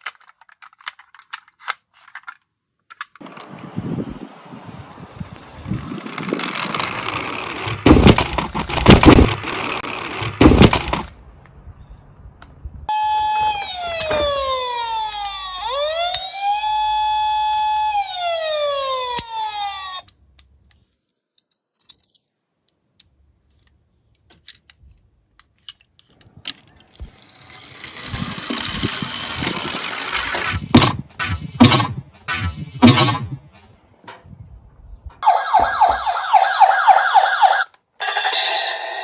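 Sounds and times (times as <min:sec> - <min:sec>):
wail siren: 0:12.9 - 0:20.1, 0:35.2 - 0:38.8.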